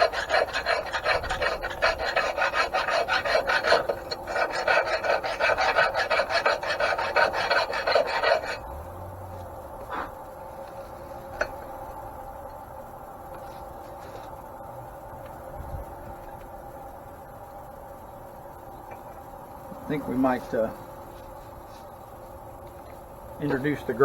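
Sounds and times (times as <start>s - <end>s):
hand file rasping on metal: 0.0s - 8.6s.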